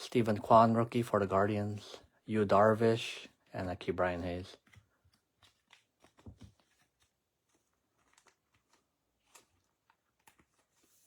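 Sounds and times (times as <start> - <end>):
trading cards being handled: 4.2 - 11.0.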